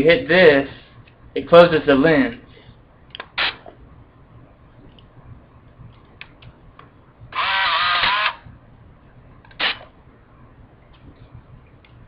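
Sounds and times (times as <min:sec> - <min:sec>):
camera lens motor whirring: 0:07.3 - 0:08.5
sharp camera click: 0:07.4 - 0:08.4, 0:09.5 - 0:09.9.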